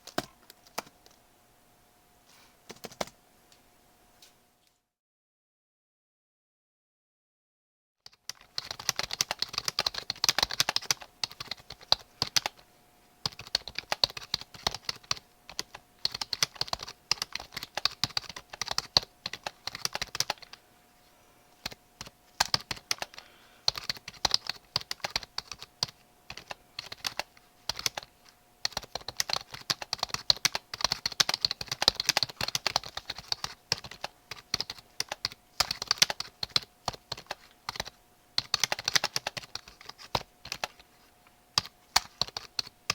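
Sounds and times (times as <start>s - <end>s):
keyboard typing clicks: 0.0s - 1.2s, 2.7s - 3.2s, 8.1s - 12.6s, 13.3s - 20.6s, 21.6s - 40.8s, 41.6s - 42.9s
faint steady hum: 0.0s - 4.9s, 8.1s - 42.9s.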